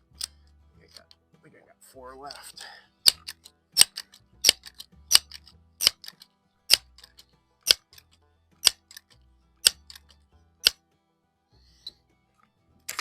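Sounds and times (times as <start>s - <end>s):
air rifle pump lever clacking: 0.2s - 1.1s, 2.3s - 10.8s.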